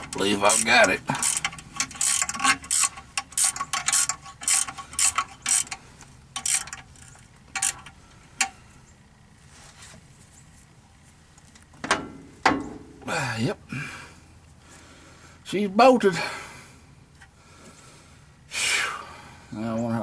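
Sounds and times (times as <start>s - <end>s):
ratchet wrench clicking: 0.0s - 5.8s, 6.4s - 8.5s.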